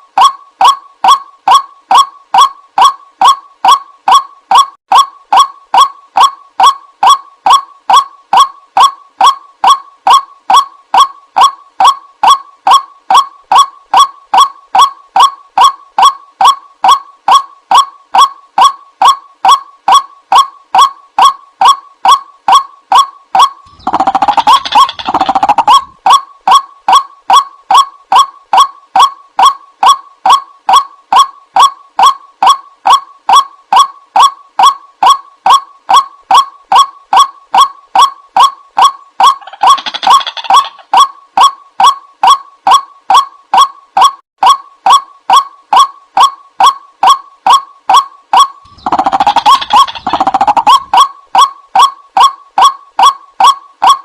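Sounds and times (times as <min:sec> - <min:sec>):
waterhen calling: 0:22.9 - 0:26.6, 0:38.0 - 0:41.0, 0:48.7 - 0:51.9
harsh bird chattering: 0:23.4 - 0:27.0, 0:39.2 - 0:41.0, 0:48.7 - 0:51.0.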